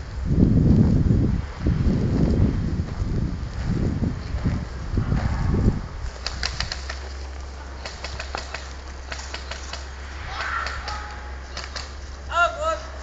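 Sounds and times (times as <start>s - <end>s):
low rumble on microphone: 0.0s - 13.0s
airsoft guns firing bursts: 6.2s - 7.0s, 7.8s - 9.9s, 10.5s - 12.0s.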